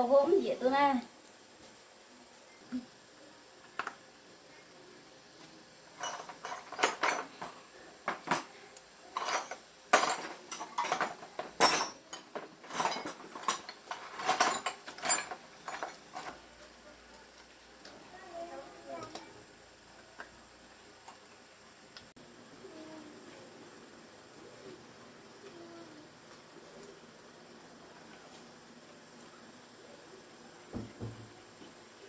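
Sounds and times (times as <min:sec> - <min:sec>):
metal tools clinking: 0:06.0 - 0:08.5, 0:09.1 - 0:16.4.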